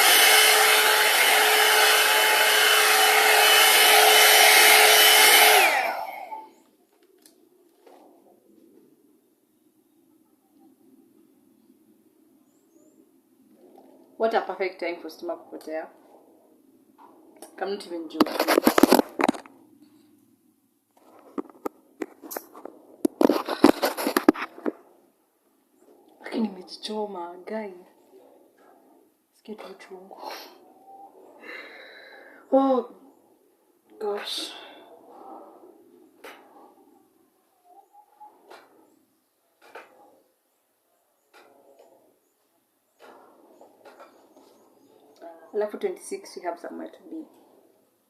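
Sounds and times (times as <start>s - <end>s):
hair dryer blowing with whine: 0.0s - 6.5s
rustling crackling handling noise: 18.2s - 19.6s, 20.9s - 24.9s.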